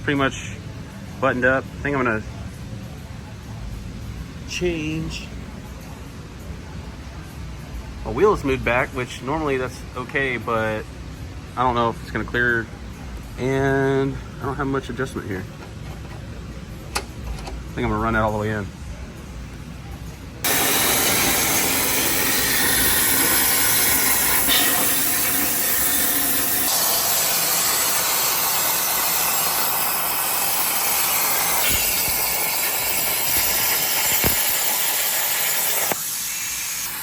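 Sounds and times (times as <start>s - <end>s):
loud hissing: 20.4s - 37.0s.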